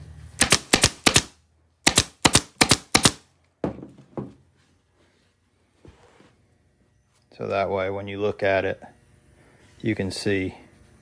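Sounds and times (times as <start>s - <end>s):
staple gun firing: 0.4s - 3.2s.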